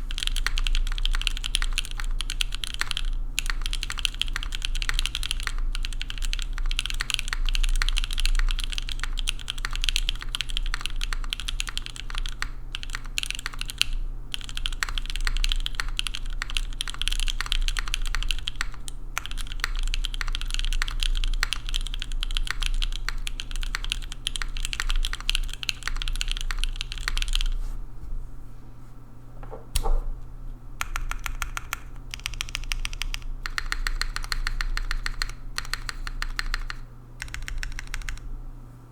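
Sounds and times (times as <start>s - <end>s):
mechanical keyboard typing: 0.0s - 27.6s, 30.8s - 38.3s.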